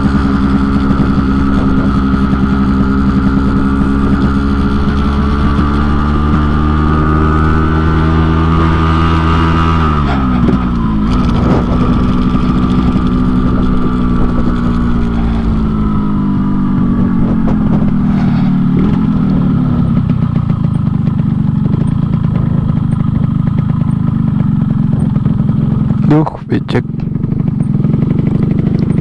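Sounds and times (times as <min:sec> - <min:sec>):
motorcycle engine running: 0:00.0 - 0:29.0.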